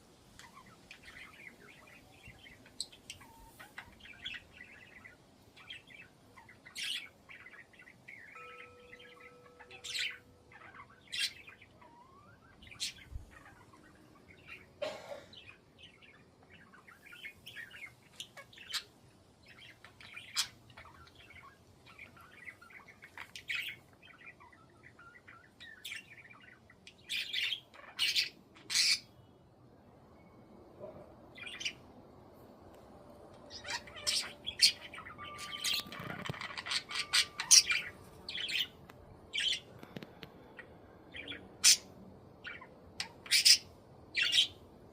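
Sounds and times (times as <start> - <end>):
budgerigars chirping and chattering: 0.4 - 14.7, 15.4 - 29.1, 33.4 - 44.6
budgerigar squawks: 42.5 - 44.6.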